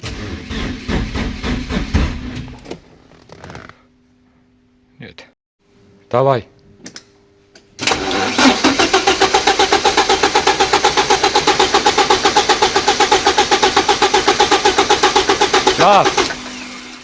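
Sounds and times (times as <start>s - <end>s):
engine cranking by starter: 0.0s - 2.8s, 7.8s - 17.0s.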